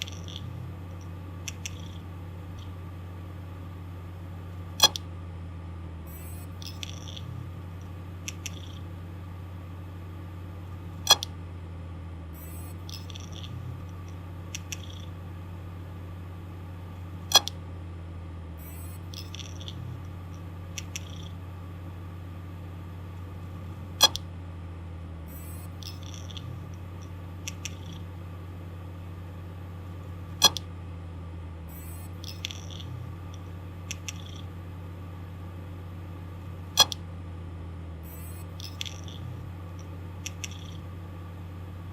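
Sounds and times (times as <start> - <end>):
hard disk drive humming: 0.0 - 41.9.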